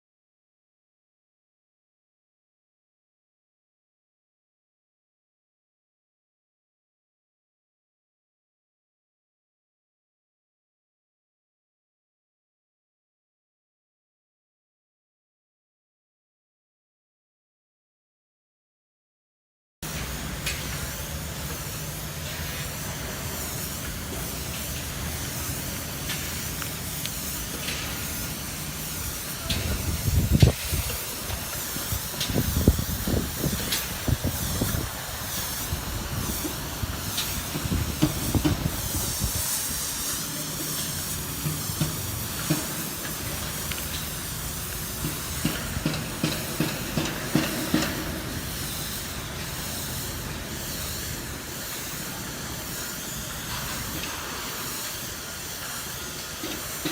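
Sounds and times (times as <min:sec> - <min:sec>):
spray hiss: 0:19.9 - 0:56.9.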